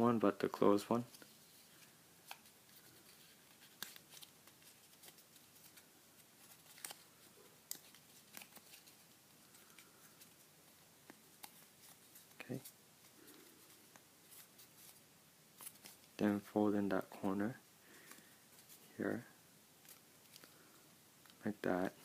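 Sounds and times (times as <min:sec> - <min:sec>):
paper crinkling and creasing: 0:01.1 - 0:10.4, 0:19.8 - 0:22.0.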